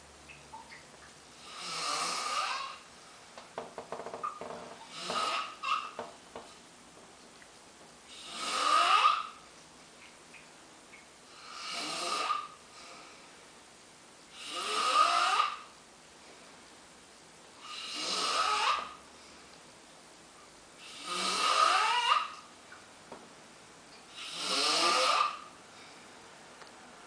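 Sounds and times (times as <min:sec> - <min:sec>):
rasping snoring: 0:01.4 - 0:02.8, 0:04.8 - 0:05.8, 0:08.1 - 0:09.3, 0:11.3 - 0:12.6, 0:14.4 - 0:15.7, 0:17.6 - 0:18.9, 0:20.8 - 0:22.3, 0:24.2 - 0:25.5.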